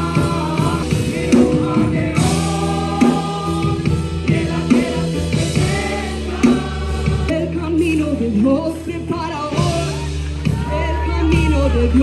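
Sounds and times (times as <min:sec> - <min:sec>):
drum hits: 0:00.0 - 0:07.3
group of singers: 0:00.0 - 0:12.0
steady bass notes: 0:00.0 - 0:12.0.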